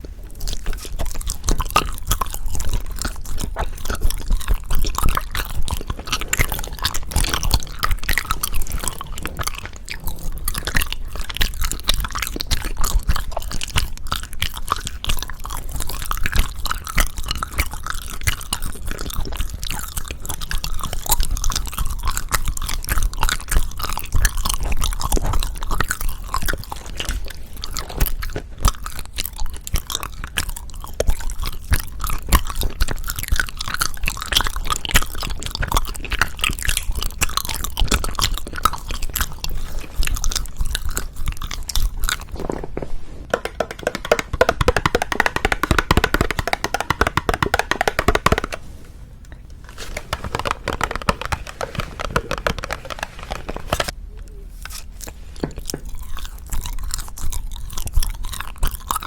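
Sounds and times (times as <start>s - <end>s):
close chewing with wet clicks: 0.0s - 48.6s, 49.2s - 59.0s.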